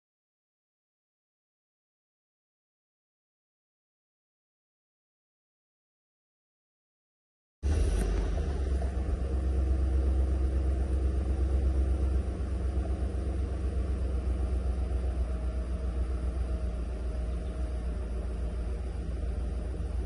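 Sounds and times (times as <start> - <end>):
engine running rumble: 7.6 - 20.0.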